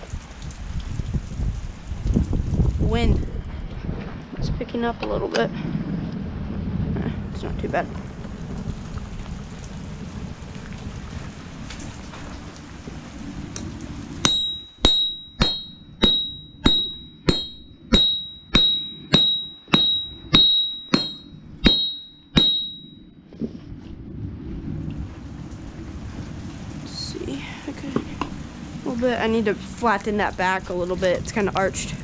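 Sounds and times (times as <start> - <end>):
rain: 0.0 - 18.0, 22.9 - 32.0
wind noise: 0.0 - 32.0
hammer striking metal on anvil: 14.2 - 23.0.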